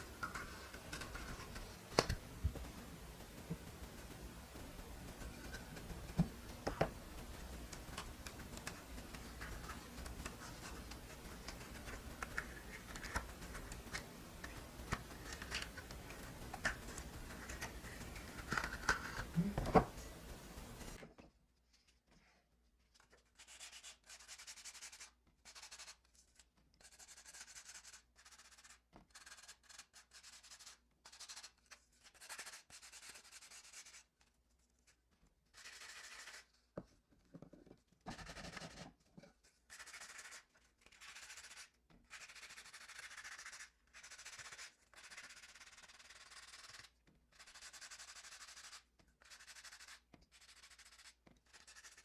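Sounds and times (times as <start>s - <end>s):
scratchy rubbing on cement: 0.0s - 21.0s, 39.7s - 52.0s.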